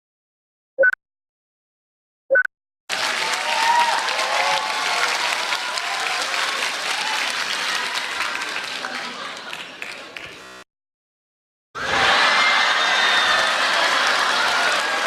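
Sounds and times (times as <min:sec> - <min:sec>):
audience clapping: 0:02.9 - 0:10.6, 0:12.1 - 0:15.0
audience laughter: 0:08.2 - 0:10.2, 0:11.8 - 0:15.0.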